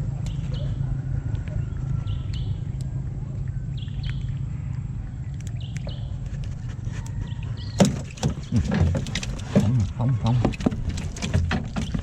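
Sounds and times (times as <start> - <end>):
low motor hum: 0.0 - 12.0
bird chirping: 1.6 - 2.9, 3.5 - 6.3.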